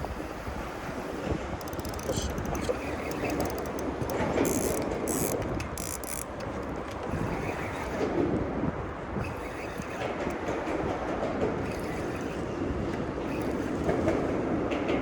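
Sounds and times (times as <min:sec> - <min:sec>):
fishing reel ratcheting and clicking: 0:01.6 - 0:07.1.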